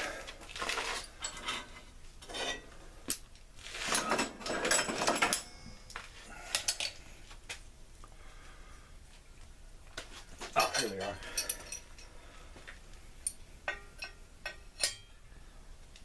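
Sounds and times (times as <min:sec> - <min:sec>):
metal objects clinking: 0:03.8 - 0:05.6, 0:10.5 - 0:12.1, 0:13.2 - 0:15.2.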